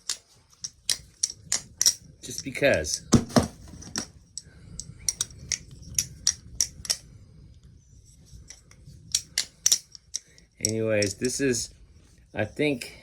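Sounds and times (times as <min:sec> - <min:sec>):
butterfly knife handles clacking: 0:00.0 - 0:03.1, 0:03.8 - 0:07.2, 0:08.3 - 0:11.7.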